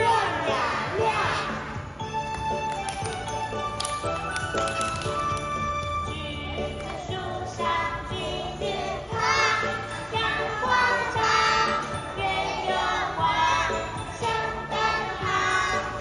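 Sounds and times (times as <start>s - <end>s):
children singing together: 0.0s - 1.7s, 6.8s - 16.0s
backing music track: 0.0s - 16.0s.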